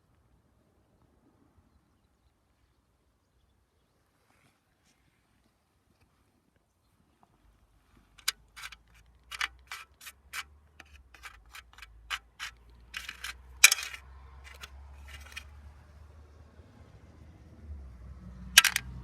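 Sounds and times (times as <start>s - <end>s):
sharp clicks and taps: 8.2s - 15.4s, 18.6s - 18.8s.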